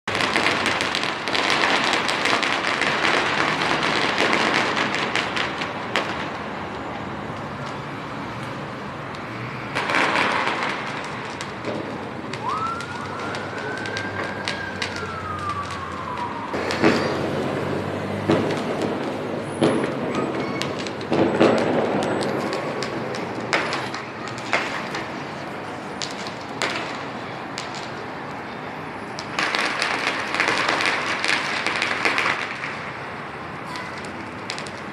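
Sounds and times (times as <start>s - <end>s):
fireworks crackling: 0.0s - 34.9s
whistling firework tone: 12.3s - 17.9s, 19.4s - 22.9s.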